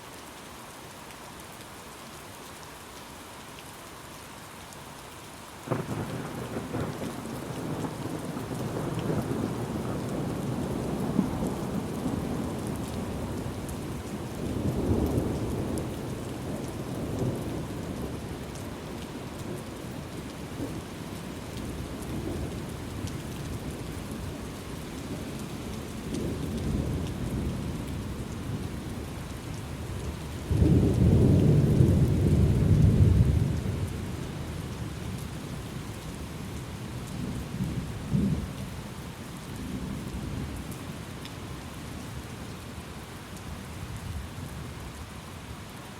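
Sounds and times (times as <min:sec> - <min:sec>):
steady rain: 0:00.0 - 0:45.9
thunder rumbling: 0:05.7 - 0:13.4.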